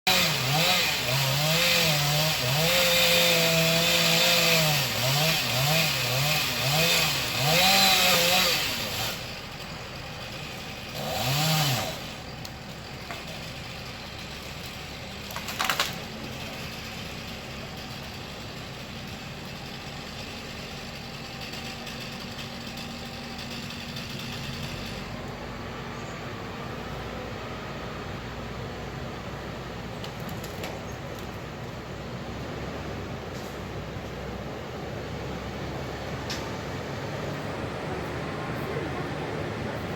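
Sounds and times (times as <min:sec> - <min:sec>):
chainsaw cutting wood: 0:00.1 - 0:25.4.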